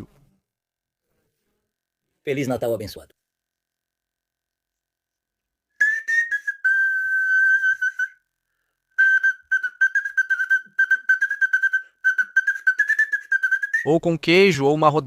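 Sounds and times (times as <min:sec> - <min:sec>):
shrill whistle tone: 0:05.7 - 0:08.3, 0:08.9 - 0:14.0.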